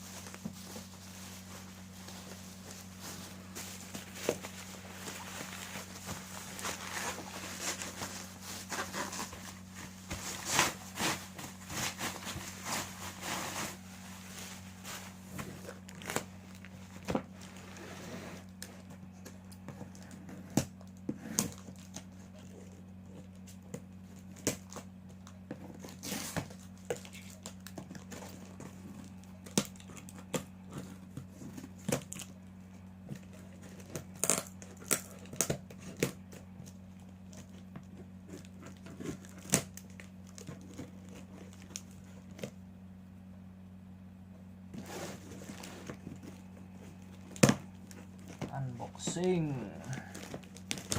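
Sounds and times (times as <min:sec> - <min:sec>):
wrapping crinkling and tearing: 0:00.0 - 0:42.6, 0:44.8 - 0:50.9.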